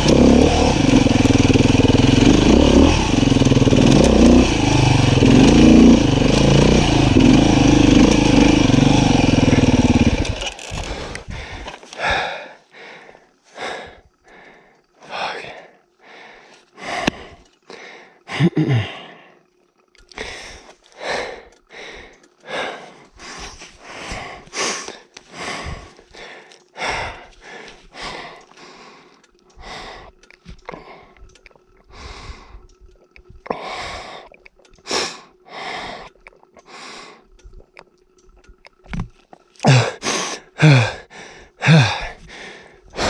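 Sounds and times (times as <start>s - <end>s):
person panting: 8.6s - 19.4s, 20.1s - 37.6s, 39.6s - 43.0s
voiced gasps: 10.1s - 19.4s, 20.2s - 31.3s, 33.5s - 37.3s, 39.6s - 43.0s.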